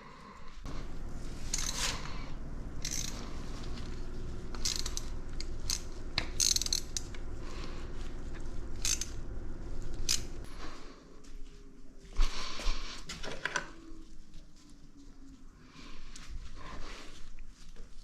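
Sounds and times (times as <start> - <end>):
steady low hum: 0.4 - 13.0
raspy ratchet-like strokes: 1.4 - 2.1, 2.8 - 3.6, 4.5 - 7.2, 8.7 - 9.3, 9.9 - 10.5.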